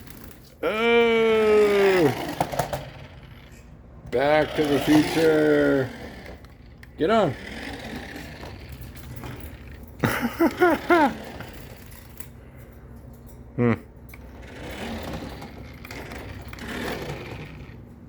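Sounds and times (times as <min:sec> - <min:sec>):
short pitched vocal cries: 0:00.6 - 0:02.3.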